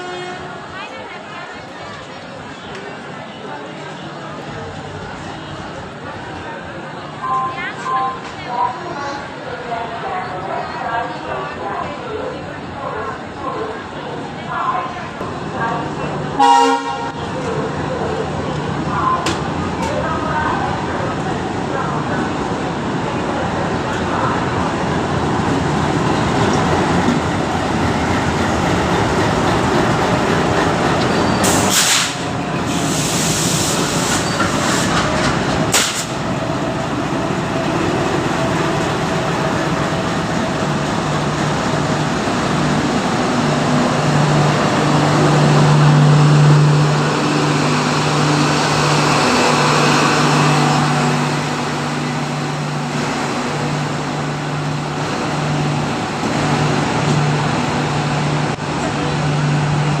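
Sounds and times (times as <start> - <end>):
train rumbling on rails: 0.0 - 60.0
diesel engine drone: 35.6 - 60.0.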